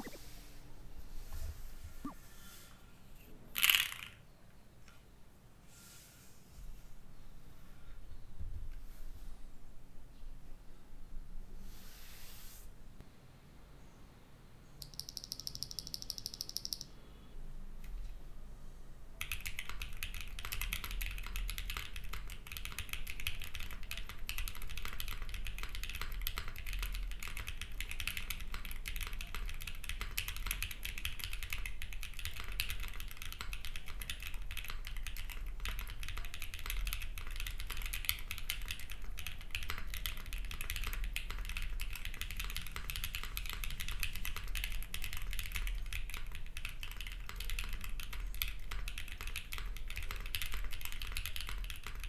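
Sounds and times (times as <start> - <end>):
fast mechanical keyboard typing: 14.8 - 16.9, 19.2 - 52.0.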